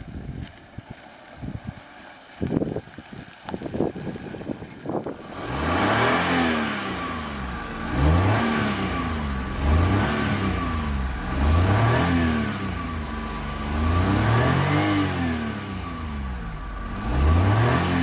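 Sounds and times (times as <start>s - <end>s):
car engine revving: 5.1s - 18.0s.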